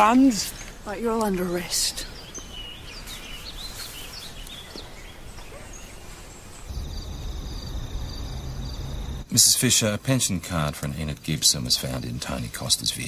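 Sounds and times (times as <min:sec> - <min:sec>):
small birds chirping: 0:00.0 - 0:09.4
steady low hum: 0:06.6 - 0:09.5.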